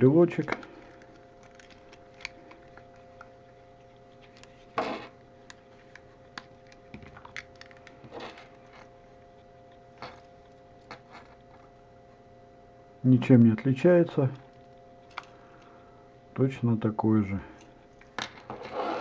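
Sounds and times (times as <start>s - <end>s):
faint steady hum: 0.0s - 19.0s
packaging rustles: 0.2s - 11.8s.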